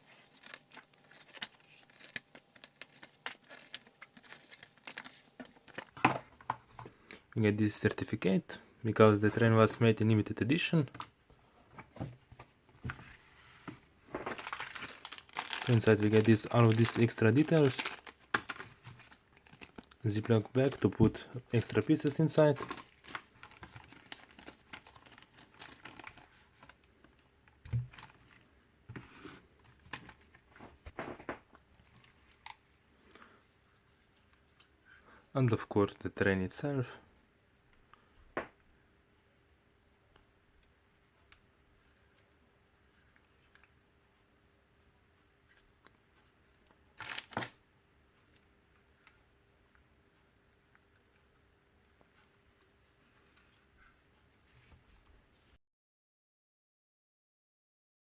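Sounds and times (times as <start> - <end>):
plastic packaging crinkling: 0.0 - 6.2, 14.1 - 26.9, 47.0 - 47.6
paper and cardboard rustling: 0.0 - 6.8, 11.7 - 26.8.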